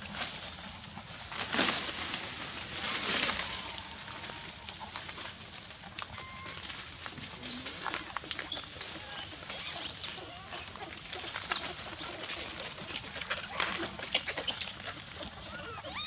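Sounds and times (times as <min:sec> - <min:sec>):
crackles and rustles: 0:00.0 - 0:16.0
animal chirps: 0:06.1 - 0:06.6, 0:15.4 - 0:16.0.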